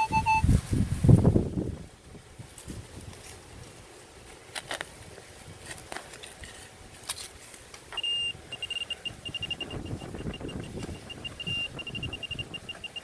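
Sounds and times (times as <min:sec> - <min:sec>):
metal detector probe beeping: 0:00.0 - 0:00.7, 0:07.9 - 0:13.0
digging in dirt: 0:02.4 - 0:09.4.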